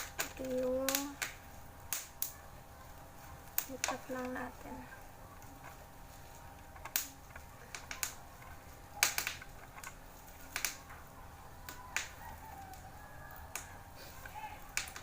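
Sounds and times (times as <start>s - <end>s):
sharp clicks and snaps: 0.0s - 2.4s, 3.4s - 4.4s, 5.4s - 15.0s.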